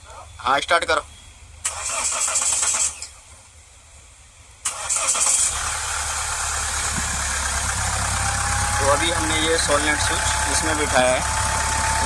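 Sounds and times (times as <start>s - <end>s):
car engine cranking: 1.6s - 3.2s, 4.6s - 12.0s
car engine idling: 4.9s - 12.0s.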